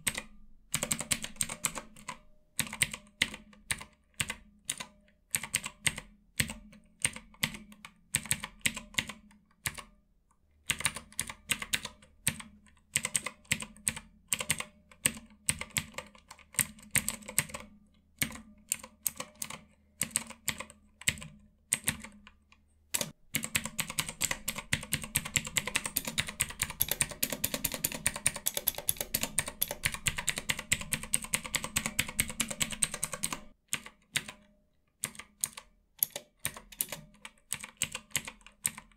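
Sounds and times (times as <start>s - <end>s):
clicky keyboard keys pressed: 23.0s - 38.9s.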